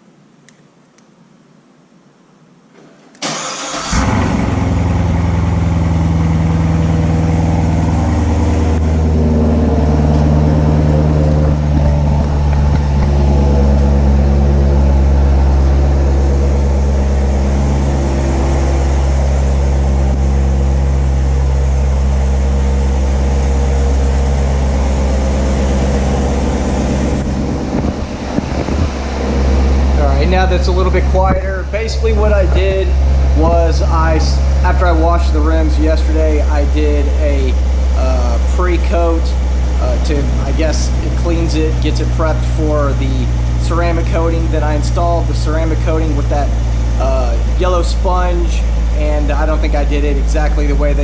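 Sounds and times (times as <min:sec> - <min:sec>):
car engine starting and idling: 0:03.0 - 0:51.0.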